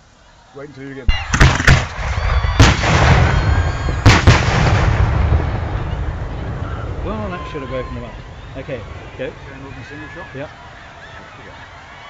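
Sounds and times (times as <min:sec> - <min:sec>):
loud firework bangs: 0:01.1 - 0:10.9
rumbling crackling firework roar: 0:01.1 - 0:12.0.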